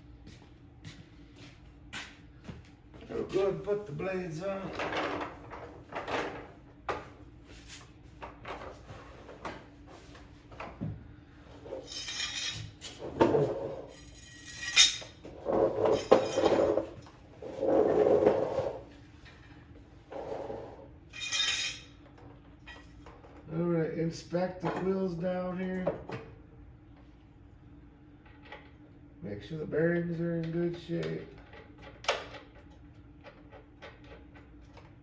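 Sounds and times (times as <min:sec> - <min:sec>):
metal clanking and scraping: 0:11.6 - 0:19.5, 0:20.1 - 0:22.0.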